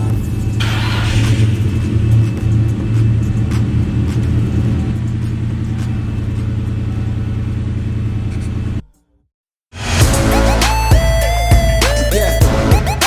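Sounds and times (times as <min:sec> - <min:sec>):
car engine rumbling: 0:00.0 - 0:08.8.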